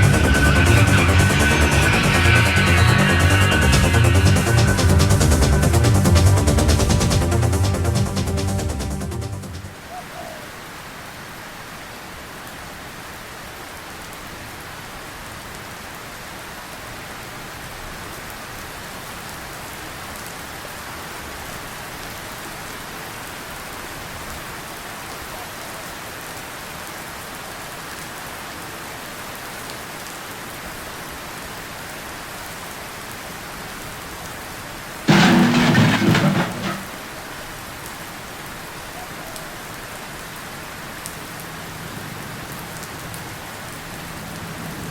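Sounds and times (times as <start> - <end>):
steady rain falling: 0.0 - 44.9.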